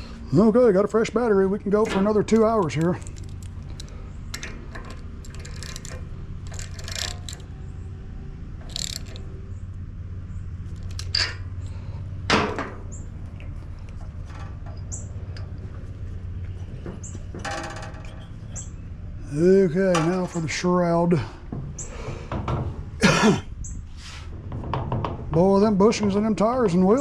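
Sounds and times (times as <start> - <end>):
steady low hum: 0.0 - 27.0
metal tools and parts clattering: 1.7 - 7.8, 8.6 - 9.6, 10.7 - 16.0, 16.6 - 18.8, 19.9 - 20.7.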